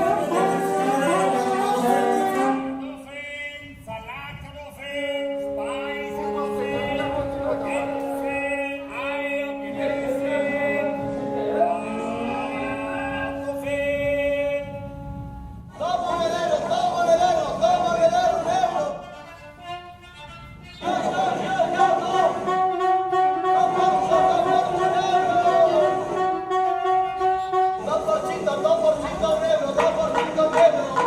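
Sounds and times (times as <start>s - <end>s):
viola and reed chamber music: 0.0s - 3.1s, 5.1s - 15.7s
voice phrases: 4.5s - 14.7s, 23.6s - 26.2s.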